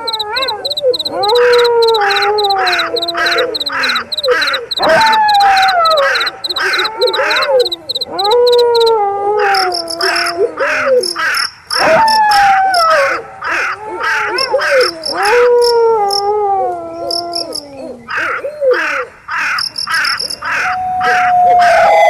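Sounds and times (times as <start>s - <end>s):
wolf howling: 0.0s - 11.0s, 11.8s - 18.9s, 20.5s - 22.0s
crickets chirping: 0.0s - 12.9s, 14.8s - 16.3s, 17.1s - 17.6s, 19.6s - 20.5s.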